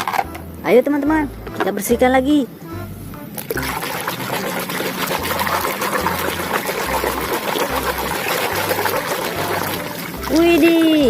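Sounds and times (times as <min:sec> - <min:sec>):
water running and splashing: 0:03.4 - 0:11.0.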